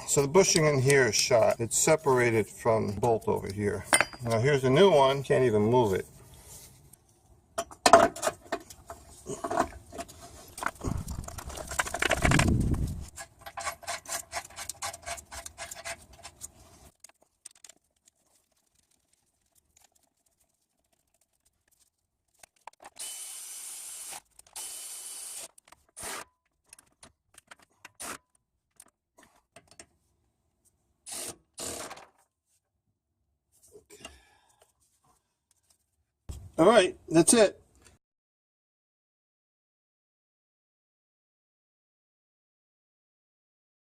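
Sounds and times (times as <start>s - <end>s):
metal hand tools clinking on bolts: 3.9s - 4.5s.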